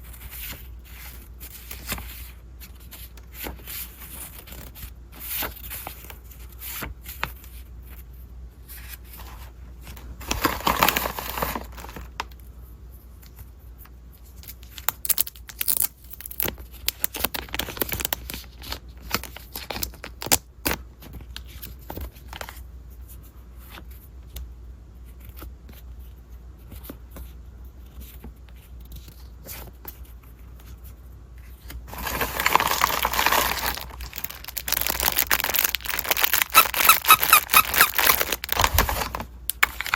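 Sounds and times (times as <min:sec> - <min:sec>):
packaging tearing and crinkling: 0:10.2 - 0:12.1, 0:14.7 - 0:20.5, 0:31.9 - 0:39.9.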